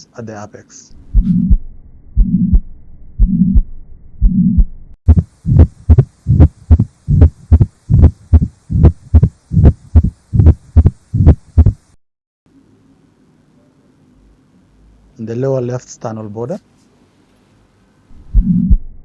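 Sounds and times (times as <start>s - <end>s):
heart murmur hum: 1.0s - 12.0s, 18.1s - 19.0s
heartbeat lub-dub: 1.0s - 12.0s, 18.1s - 18.9s.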